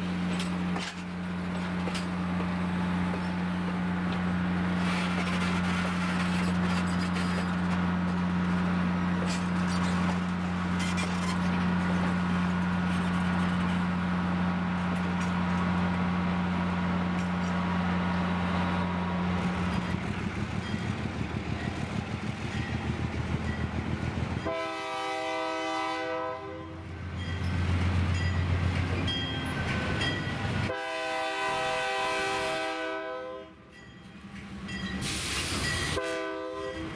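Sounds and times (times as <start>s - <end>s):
locomotive engine droning: 0.0s - 36.9s
locomotive horn blast: 24.4s - 26.9s, 30.6s - 33.6s, 35.9s - 36.9s.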